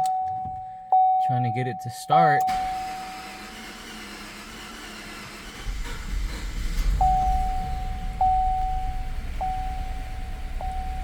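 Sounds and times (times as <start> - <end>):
dashboard warning chime: 0.0 - 3.0, 7.0 - 11.0
engine cranking and catching: 2.5 - 11.0.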